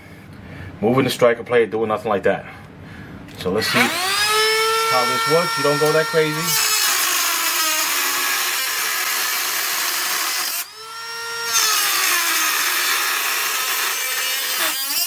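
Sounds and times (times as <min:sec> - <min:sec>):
rotary tool grinding metal: 0:03.6 - 0:15.0
rotary tool motor whine: 0:03.7 - 0:15.0.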